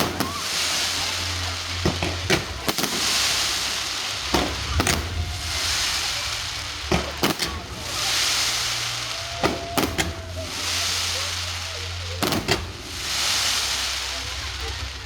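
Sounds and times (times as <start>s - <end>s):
firework bangs and pops: 0.0s - 15.0s
fireworks crackling and hissing: 0.0s - 15.0s.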